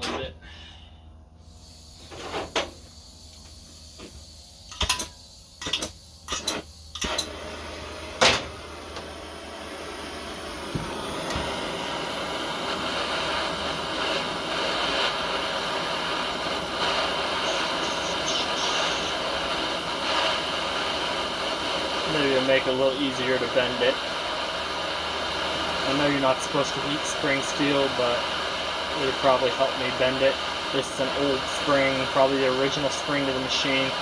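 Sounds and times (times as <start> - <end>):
torch burning with hiss: 1.4 - 34.0
sharp clicks and knocks: 4.7 - 7.3.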